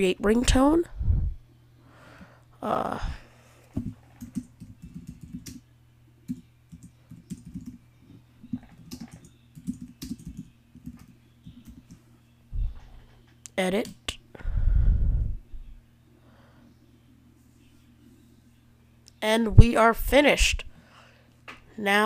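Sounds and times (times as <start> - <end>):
typing on computer keyboard: 4.1 - 5.6, 6.3 - 7.8, 8.5 - 12.0.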